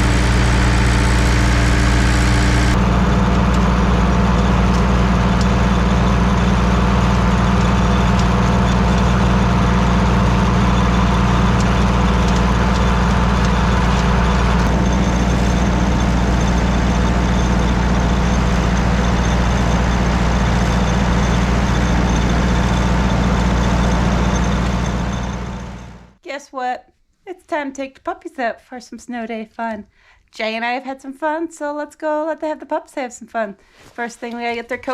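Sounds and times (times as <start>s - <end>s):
engine humming: 0.0s - 26.2s.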